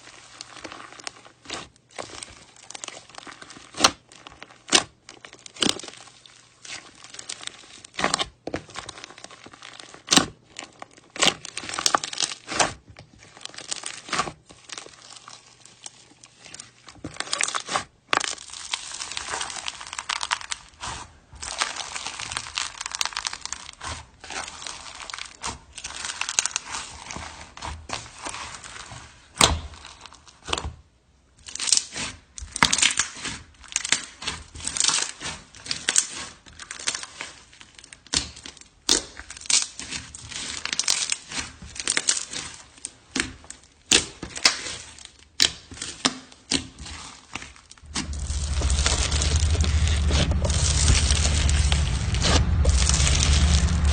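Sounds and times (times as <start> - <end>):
slime crackling and popping: 0.2 - 27.4, 31.4 - 42.6, 47.6 - 53.9
steady low hum: 47.8 - 53.9.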